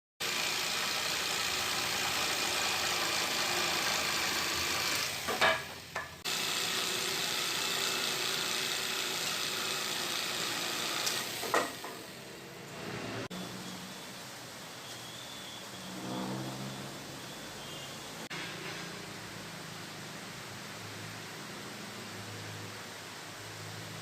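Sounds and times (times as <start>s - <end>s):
table saw whirring: 0.2s - 14.2s.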